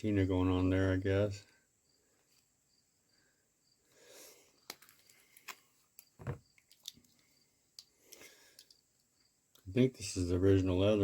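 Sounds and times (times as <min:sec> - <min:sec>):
cricket chirping: 0:01.6 - 0:05.3, 0:05.9 - 0:10.6.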